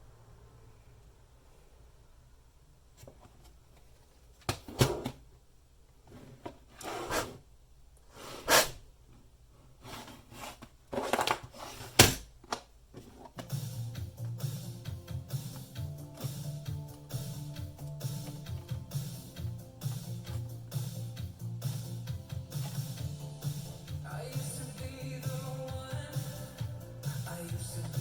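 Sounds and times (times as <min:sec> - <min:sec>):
background music: 0:13.4 - 0:28.0.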